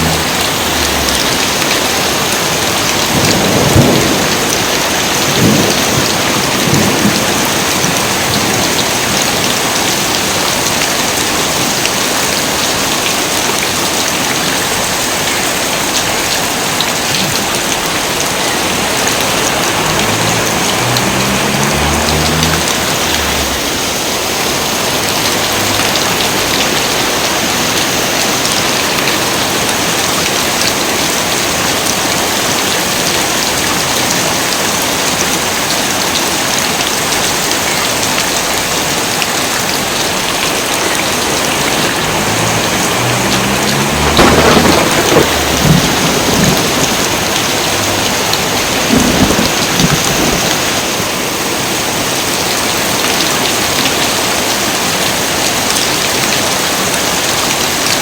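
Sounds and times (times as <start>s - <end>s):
thunder rumbling: 0.0s - 9.5s, 17.8s - 27.6s, 41.0s - 50.8s
heavy rain falling: 0.0s - 58.0s.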